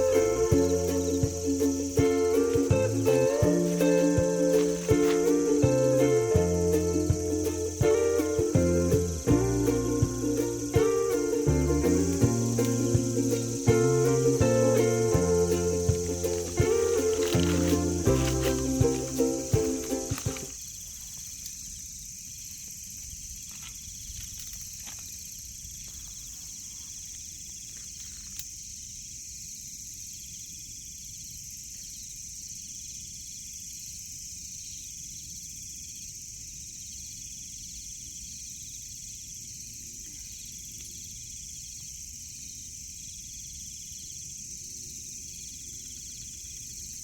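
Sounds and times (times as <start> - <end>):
low background hiss: 0.0 - 28.8
insects chirring: 0.0 - 47.0
lower insect chirp: 0.0 - 47.0.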